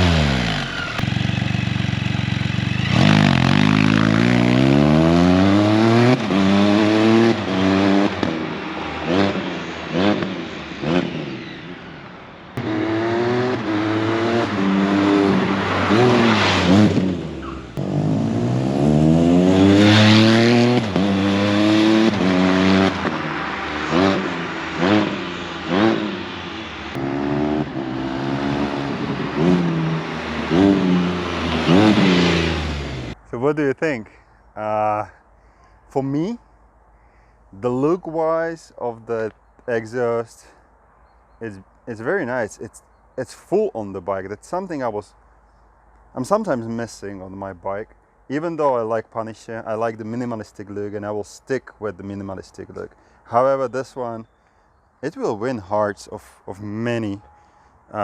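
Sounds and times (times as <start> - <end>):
motorcycle engine revving: 0.0 - 33.2.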